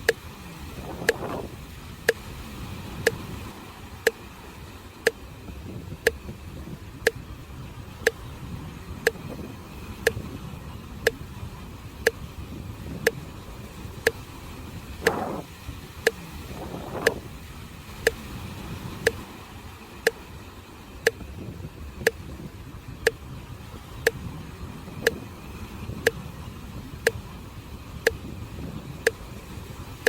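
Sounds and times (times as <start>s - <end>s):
sea surf rumble: 0.0s - 30.0s
sharp even ticking: 1.0s - 1.5s, 15.0s - 15.4s.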